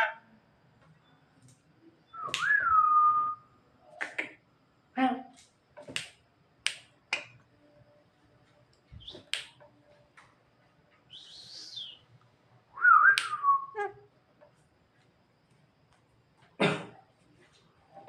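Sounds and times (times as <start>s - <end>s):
bird whistled note: 11.1s - 12.0s.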